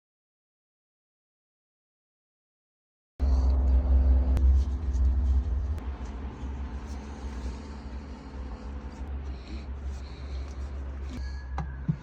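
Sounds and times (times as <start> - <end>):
engine running low rumble: 3.2 - 12.0.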